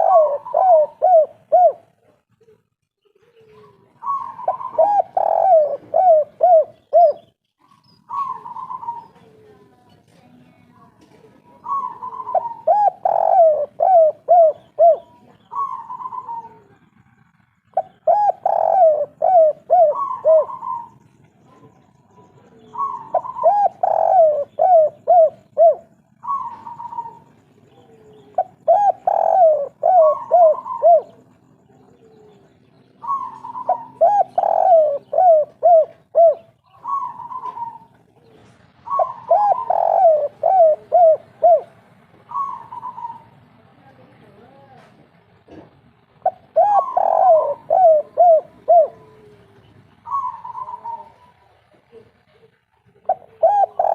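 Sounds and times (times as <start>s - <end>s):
dove cooing: 0.0s - 9.8s, 11.1s - 43.5s, 46.2s - 53.9s.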